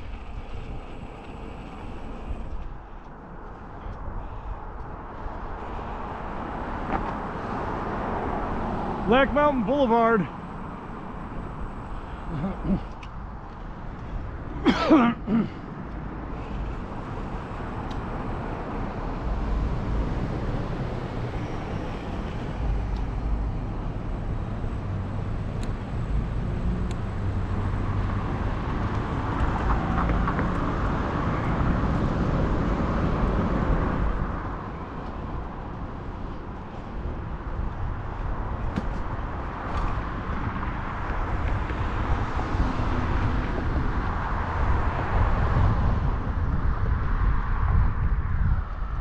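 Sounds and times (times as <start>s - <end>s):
road traffic: 0.0s - 49.0s
wind rumbling on microphone: 15.5s - 49.0s.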